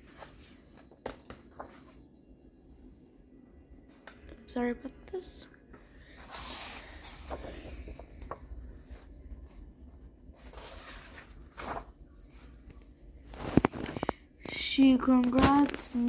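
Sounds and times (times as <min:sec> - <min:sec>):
paper rustling: 0:00.0 - 0:02.0, 0:06.2 - 0:09.1, 0:10.4 - 0:14.1, 0:15.2 - 0:16.0.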